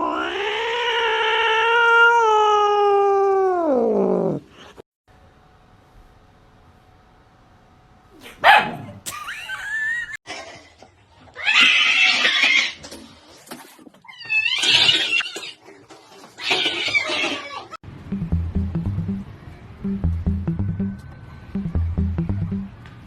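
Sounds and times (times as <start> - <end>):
dog barking roughly: 8.2 - 9.1.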